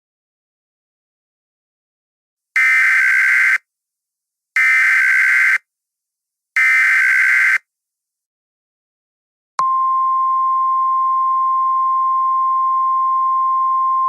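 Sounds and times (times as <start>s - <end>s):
harsh screechy digital data bursts: 2.6s - 3.6s, 6.6s - 7.6s.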